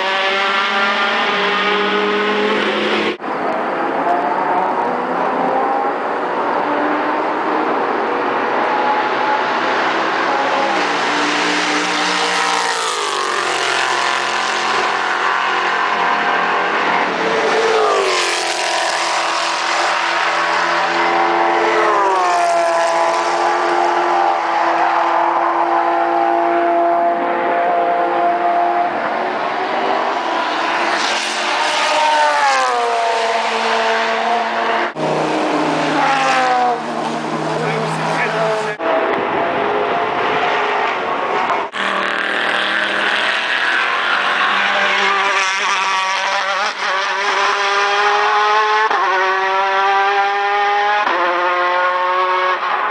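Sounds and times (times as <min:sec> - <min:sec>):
racing car engines at high revs: 0:00.0 - 0:52.9.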